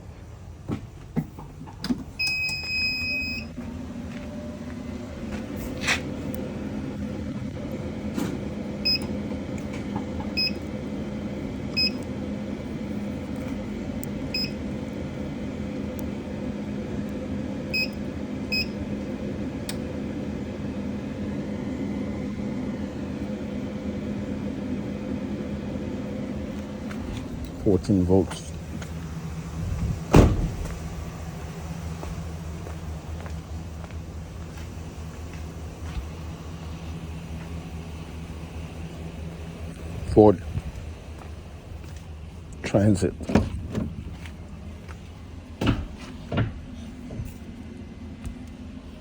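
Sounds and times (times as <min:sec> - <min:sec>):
van engine idling: 0:00.0 - 0:49.0
electronic warning beeps: 0:02.2 - 0:03.5, 0:08.8 - 0:09.1, 0:10.4 - 0:10.6, 0:11.8 - 0:12.0, 0:14.3 - 0:14.6, 0:17.7 - 0:18.8.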